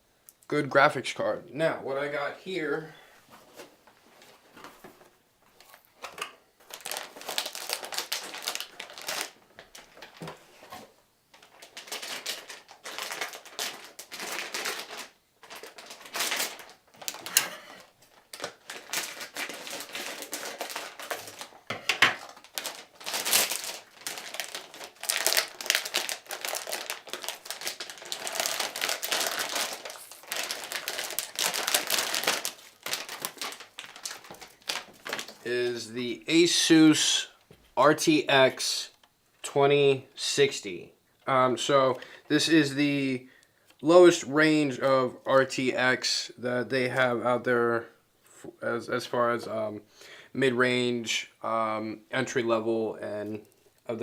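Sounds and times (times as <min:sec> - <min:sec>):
packaging rustling and crinkling: 0:03.3 - 0:35.5.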